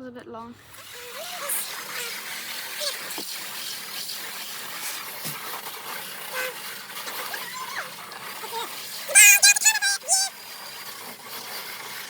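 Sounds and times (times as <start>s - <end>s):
steady hiss: 0.6s - 12.0s
high-pitched chirps and glides: 6.2s - 11.1s.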